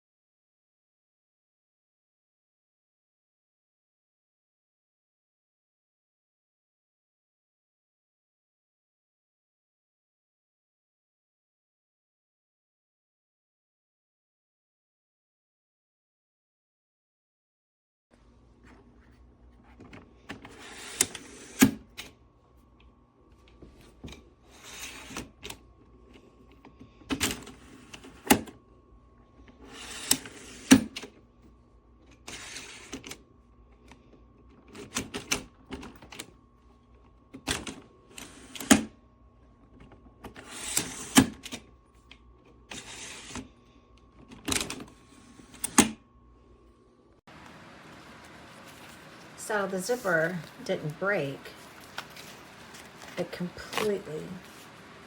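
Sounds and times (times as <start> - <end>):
faint steady hum: 35.4 - 55.0.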